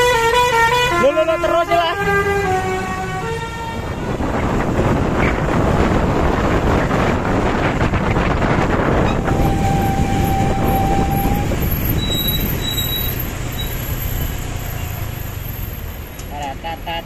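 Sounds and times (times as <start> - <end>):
bus driving past: 2.0 - 17.0
thin steady whistling tone: 9.3 - 14.4.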